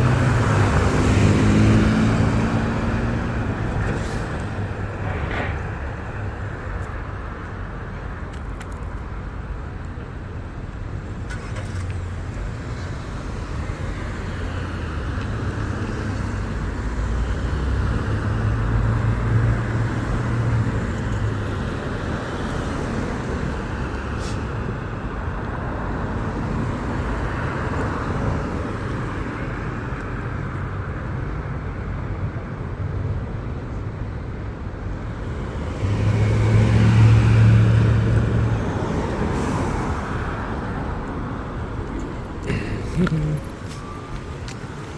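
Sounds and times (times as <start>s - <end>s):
loud engine passing close: 0.0s - 3.9s, 35.4s - 41.1s
vehicles passing on street: 0.0s - 44.9s.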